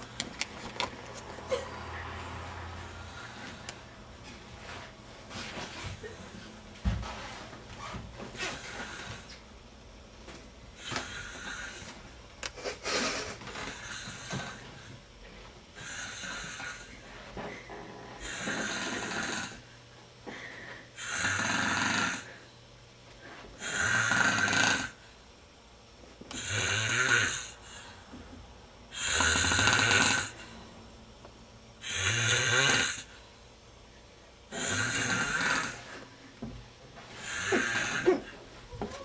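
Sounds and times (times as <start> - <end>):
man snoring loudly: 15.8 - 16.9, 18.2 - 19.7, 21.0 - 22.3, 23.6 - 25.0, 26.4 - 27.6, 28.9 - 30.4, 31.8 - 33.1, 34.5 - 35.9, 37.2 - 38.3
quiet breathing: 19.6 - 21.0.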